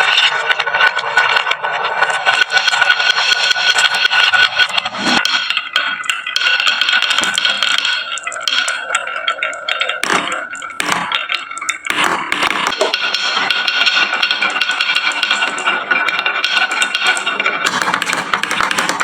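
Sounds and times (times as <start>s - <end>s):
marbles rattling on wooden tracks: 5.2s - 19.0s.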